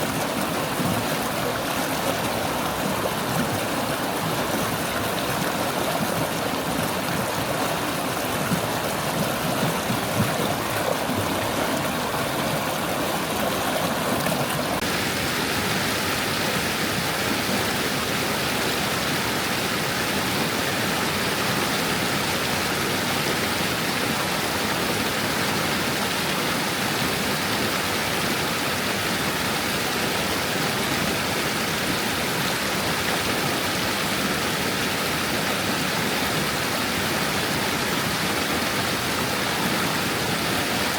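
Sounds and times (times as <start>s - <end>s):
stream babbling over stones: 0.0s - 40.9s.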